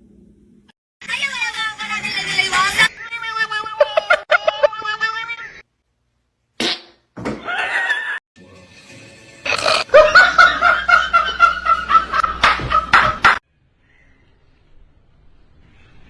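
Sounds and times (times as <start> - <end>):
person laughing hard: 3.8 - 4.8, 7.4 - 8.2, 9.9 - 13.4.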